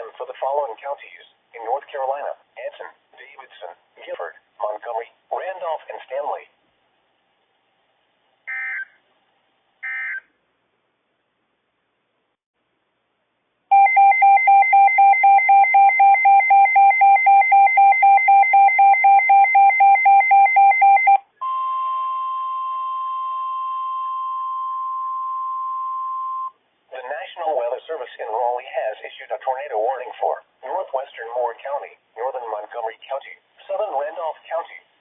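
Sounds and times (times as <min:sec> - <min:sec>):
pulsing alarm beeping: 0:13.7 - 0:26.5
steady alarm tone: 0:13.7 - 0:26.5.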